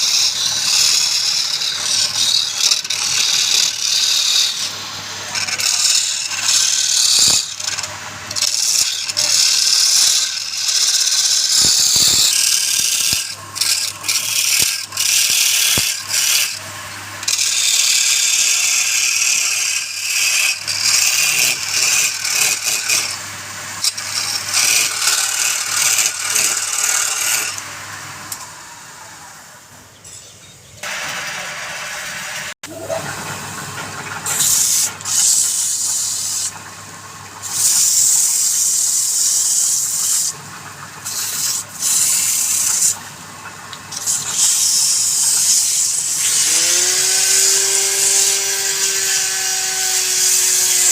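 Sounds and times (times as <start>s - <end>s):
tool scraping spinning wood: 0.0s - 29.3s, 30.1s - 36.6s, 37.4s - 43.1s, 43.8s - 50.9s
lathe motor hum: 0.0s - 29.8s, 43.9s - 50.9s.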